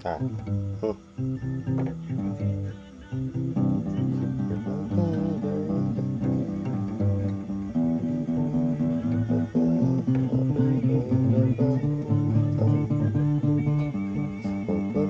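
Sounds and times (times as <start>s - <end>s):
guitar notes and chords: 0.0s - 15.0s.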